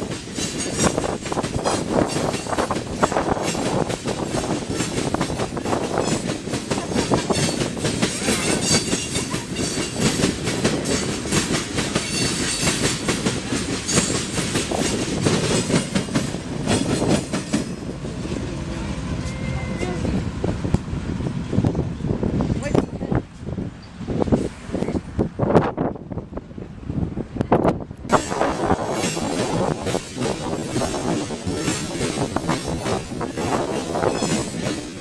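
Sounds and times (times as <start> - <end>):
train wheels clattering over rail joints: 0.0 - 18.5, 28.1 - 35.0.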